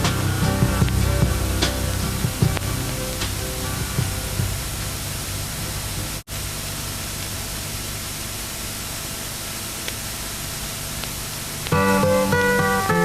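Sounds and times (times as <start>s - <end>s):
music: 0.0s - 6.2s, 11.6s - 13.0s
steady hiss: 0.0s - 13.0s.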